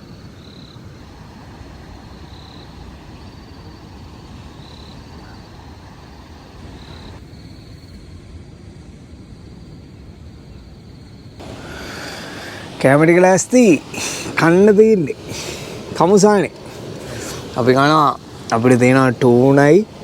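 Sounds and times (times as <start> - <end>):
wind: 0.0 - 20.0
surf: 11.4 - 20.0.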